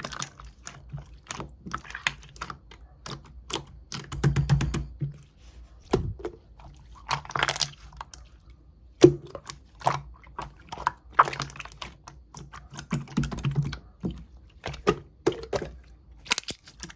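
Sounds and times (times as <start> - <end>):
slime squished by hand: 5.4 - 16.9.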